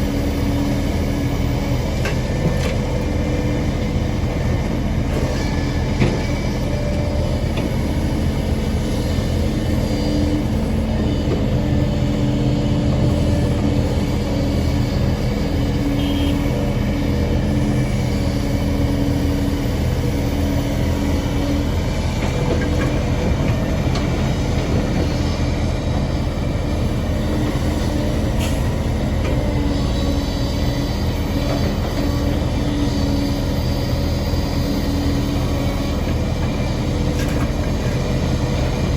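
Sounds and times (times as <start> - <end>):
excavator diesel engine droning: 0.0 - 38.9.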